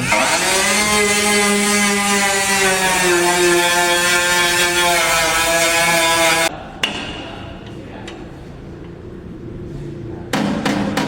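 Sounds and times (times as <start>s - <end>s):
power tool motor running: 0.0s - 6.5s.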